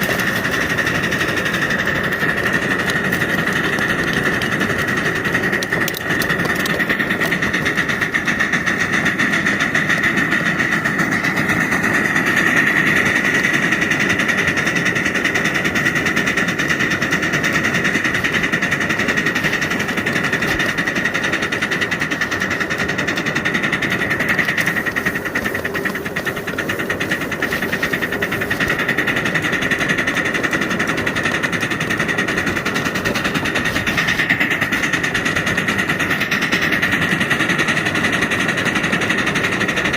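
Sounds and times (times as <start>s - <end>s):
steam locomotive working: 0.0s - 39.9s.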